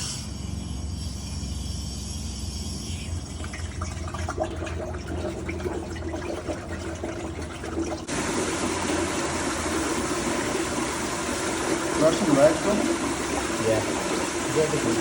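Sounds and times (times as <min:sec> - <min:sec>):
gas bubbling through water: 0:02.5 - 0:15.0
steady gas rush: 0:08.1 - 0:15.0.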